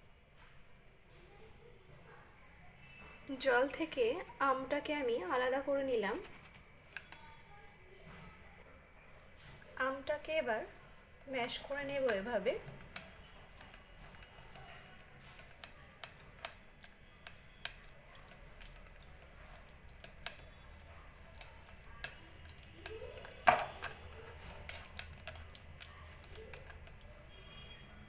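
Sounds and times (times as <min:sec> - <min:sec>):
utensil mashing against strainer: 0:04.2 - 0:07.6, 0:09.6 - 0:27.8
metal clicks and scrapes: 0:11.3 - 0:27.6.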